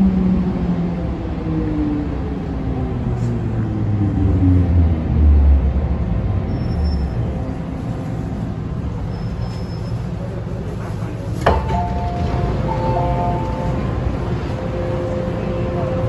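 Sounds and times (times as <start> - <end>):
electric train rumbling: 0.0 - 16.0
high steady tones: 11.5 - 16.0.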